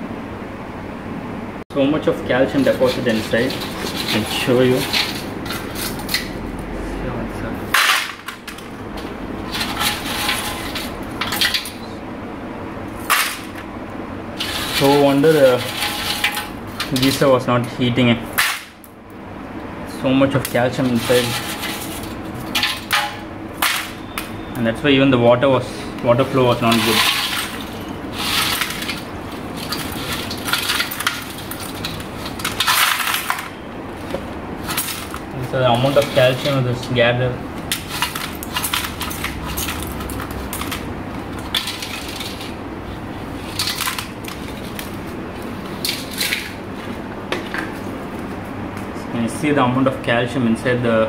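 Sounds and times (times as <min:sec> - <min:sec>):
scale crunching and scraping on metal: 0:02.5 - 0:06.4, 0:07.8 - 0:11.8, 0:14.4 - 0:17.3, 0:20.5 - 0:24.2, 0:26.1 - 0:33.6, 0:34.6 - 0:36.7
metal parts clinking and rattling: 0:02.6 - 0:06.4, 0:07.7 - 0:11.9, 0:14.4 - 0:17.3, 0:20.5 - 0:24.3, 0:26.2 - 0:36.6, 0:37.7 - 0:42.6, 0:43.4 - 0:45.0, 0:45.8 - 0:46.6.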